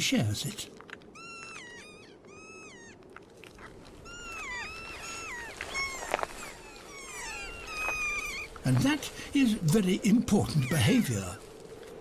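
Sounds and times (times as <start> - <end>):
parrots calling: 4.0 - 8.6.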